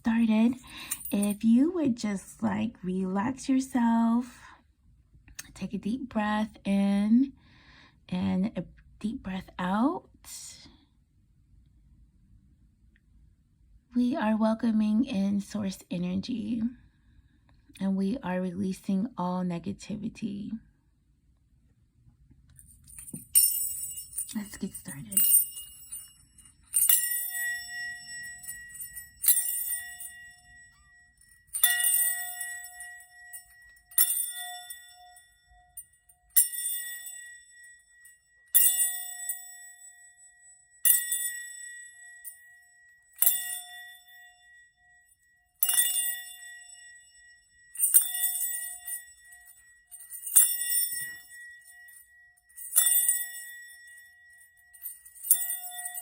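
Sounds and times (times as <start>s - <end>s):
small bell ringing: 0.0s - 1.4s, 22.6s - 56.0s.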